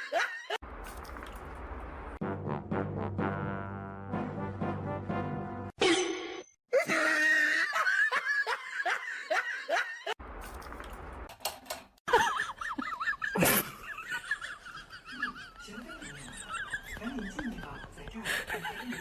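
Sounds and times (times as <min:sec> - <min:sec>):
person laughing: 0:06.8 - 0:10.2, 0:12.1 - 0:19.0.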